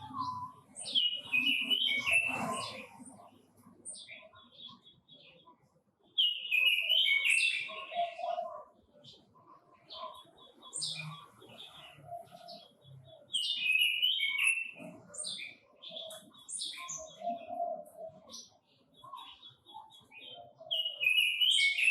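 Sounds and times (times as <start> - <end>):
soft bird chirps: 0.0 - 21.9.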